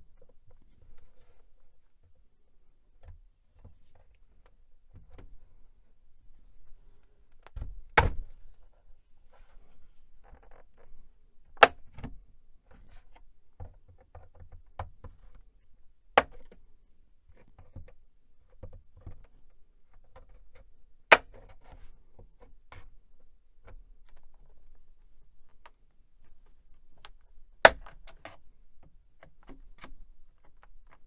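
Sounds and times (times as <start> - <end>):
sharp plastic snaps: 27.0 - 28.4.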